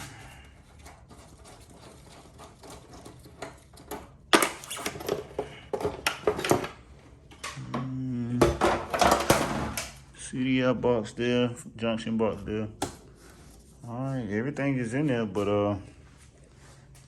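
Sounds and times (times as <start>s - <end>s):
motorcycle parts clattering: 3.2s - 10.0s.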